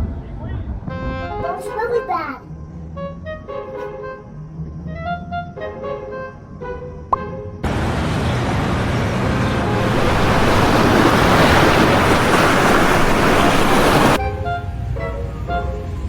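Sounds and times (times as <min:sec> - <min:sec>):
background music: 0:00.7 - 0:07.7, 0:14.2 - 0:16.0
floodwater rushing: 0:07.7 - 0:14.2.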